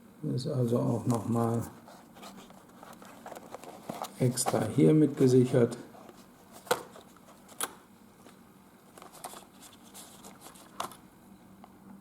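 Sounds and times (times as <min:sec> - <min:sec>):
packaging rustling: 0:02.2 - 0:11.0.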